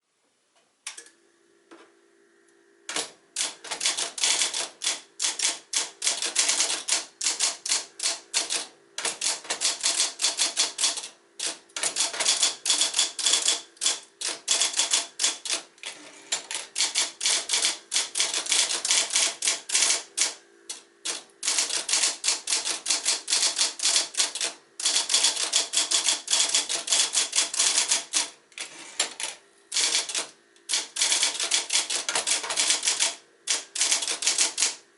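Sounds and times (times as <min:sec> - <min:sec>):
typewriter key strikes: 0:02.9 - 0:15.6, 0:16.4 - 0:20.3, 0:21.1 - 0:28.3, 0:29.8 - 0:34.8
typewriter motor hum: 0:02.9 - 0:34.8.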